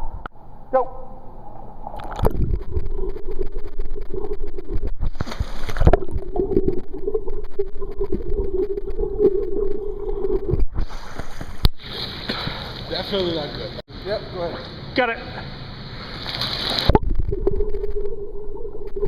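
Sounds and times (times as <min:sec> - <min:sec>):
water splashing: 0:01.8 - 0:13.8, 0:15.9 - 0:19.0.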